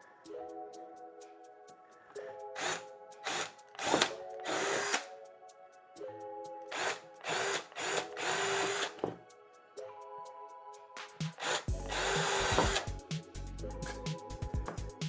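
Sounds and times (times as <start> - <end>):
background music: 0.0 - 15.0
hammer drill drilling: 2.6 - 5.0, 6.7 - 9.1, 11.4 - 12.8.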